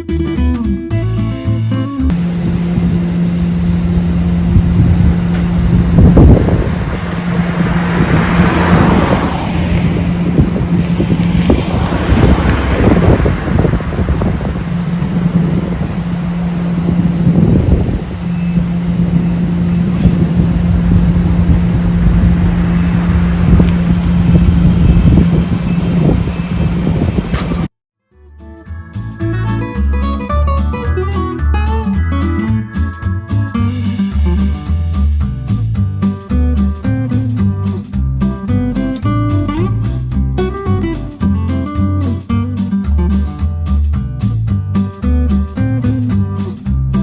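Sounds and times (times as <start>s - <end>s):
car engine running: 2.1s - 27.7s
wind noise on microphone: 2.1s - 27.7s.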